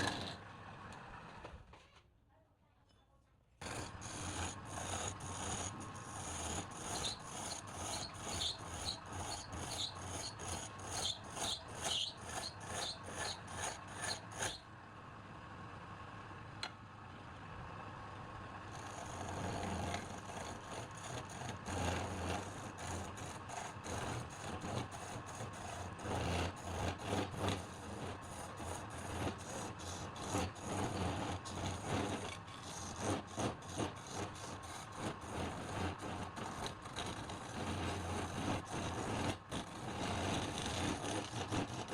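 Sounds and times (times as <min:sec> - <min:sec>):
hand rasping wood: 0:00.0 - 0:00.4, 0:03.6 - 0:14.6, 0:18.7 - 0:41.9.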